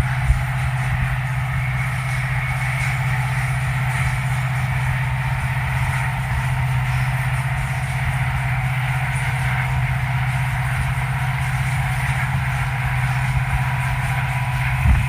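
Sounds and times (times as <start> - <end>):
locomotive low hum: 0.0 - 15.0.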